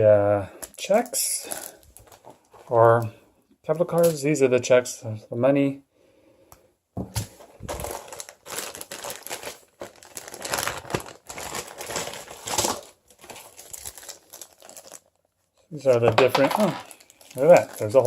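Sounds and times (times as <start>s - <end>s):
plastic packaging crinkling: 0.6s - 2.8s, 7.2s - 18.0s.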